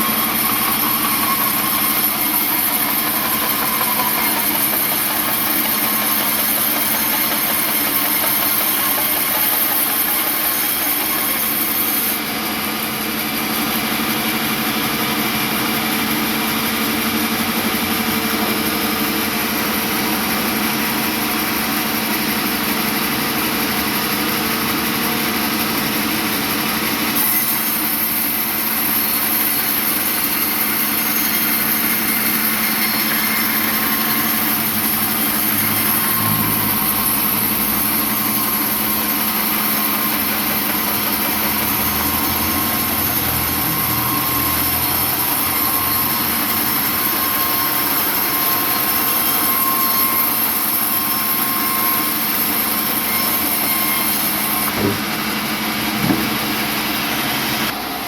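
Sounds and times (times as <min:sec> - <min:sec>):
motor-driven saw humming and whining: 0:00.0 - 0:58.0
short knock: 0:54.7 - 0:55.2, 0:56.0 - 0:56.5.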